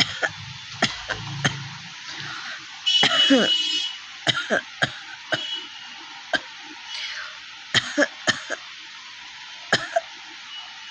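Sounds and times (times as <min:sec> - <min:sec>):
person's short dry coughs: 0:00.0 - 0:01.6, 0:03.0 - 0:03.6.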